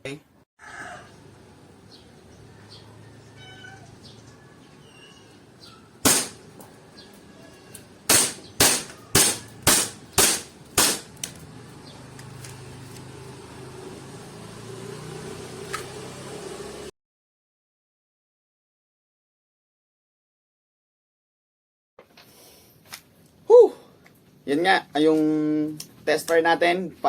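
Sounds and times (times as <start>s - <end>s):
airsoft pistol shots: 6.0s - 6.5s, 8.1s - 11.3s.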